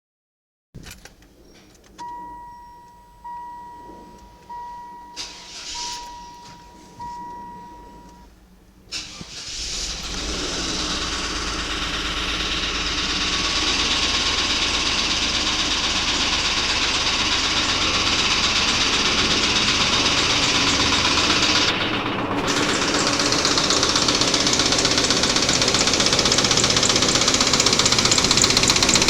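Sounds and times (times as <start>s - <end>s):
car engine starting and running: 1.2s - 29.0s
steady beep: 2.0s - 8.3s
rapid even engine knocking: 9.3s - 29.0s.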